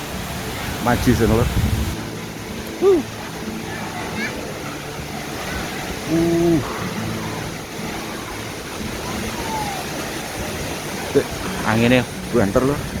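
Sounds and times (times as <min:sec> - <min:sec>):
strong wind: 0:00.0 - 0:13.0
waterfall rushing: 0:00.0 - 0:13.0
person hooting: 0:02.8 - 0:03.1, 0:06.1 - 0:06.6.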